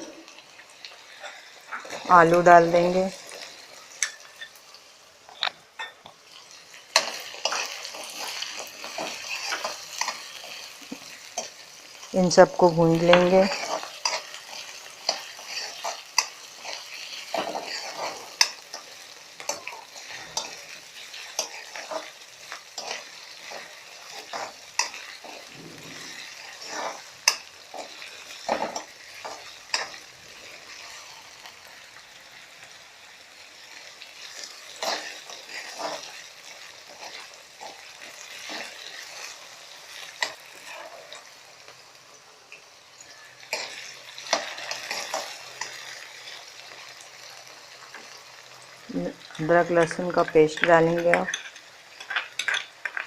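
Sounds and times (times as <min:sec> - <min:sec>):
vegetables sizzling in hot oil: 0:00.0 - 0:53.0
utensil clinking and scraping pan: 0:49.8 - 0:53.0.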